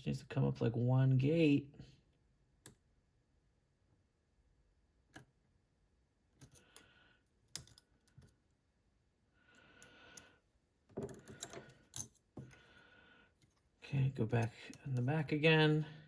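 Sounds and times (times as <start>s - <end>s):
lock pick scratching: 6.4s - 6.8s
lock pick clicking: 7.5s - 8.3s.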